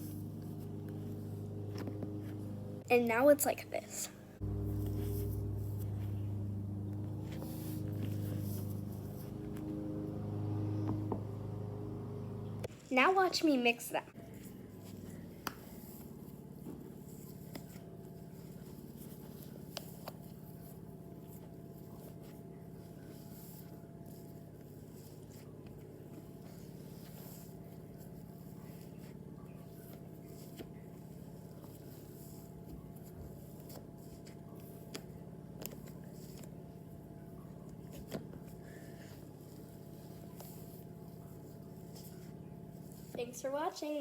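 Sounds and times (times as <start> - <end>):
steady low hum: 0.0 - 13.2, 13.9 - 44.0.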